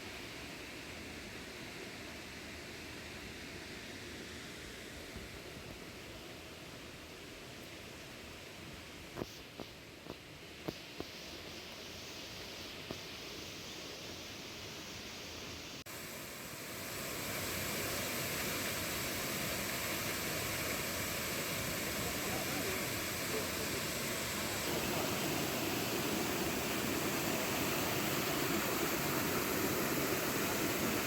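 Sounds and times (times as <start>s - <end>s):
flowing water rushing: 12.0s - 31.0s.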